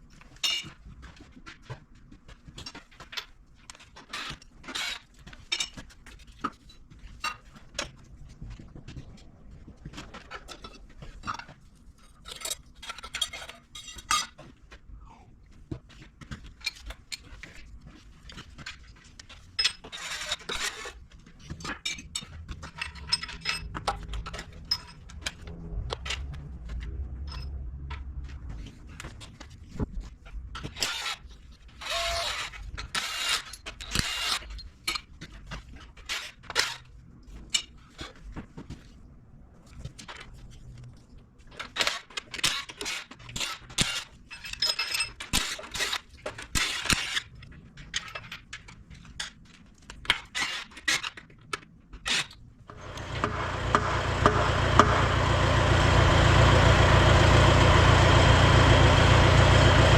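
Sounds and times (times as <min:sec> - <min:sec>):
metal tools clinking on engine parts: 0:21.8 - 0:25.2, 0:27.2 - 0:27.6, 0:44.3 - 0:45.3
low motor drone: 0:52.7 - 0:59.9.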